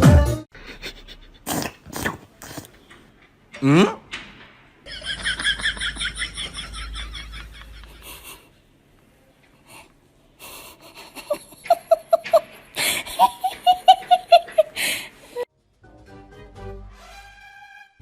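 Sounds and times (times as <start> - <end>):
baby laughing: 13.1 - 15.4.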